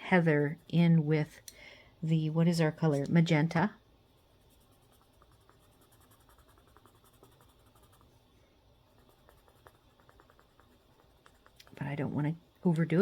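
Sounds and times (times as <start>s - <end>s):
coloured pencils scratching on paper: 4.4s - 8.1s, 8.9s - 12.3s.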